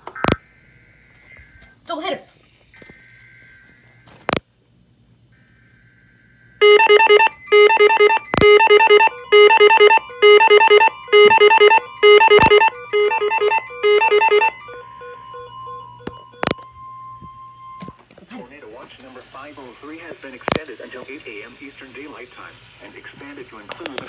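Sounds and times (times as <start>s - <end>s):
sharp clicks: 6.6s - 14.6s, 16.0s - 16.7s, 20.4s - 20.8s
rapid electronic beeps: 6.6s - 18.0s
two-tone alert data burst: 6.6s - 18.0s.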